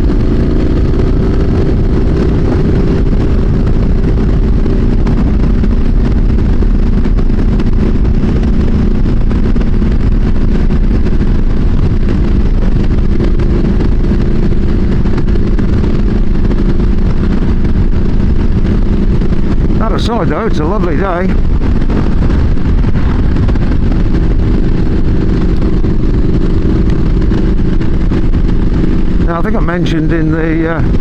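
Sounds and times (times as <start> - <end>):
motorcycle engine cruising: 0.0 - 31.0
wind noise on microphone: 0.0 - 31.0.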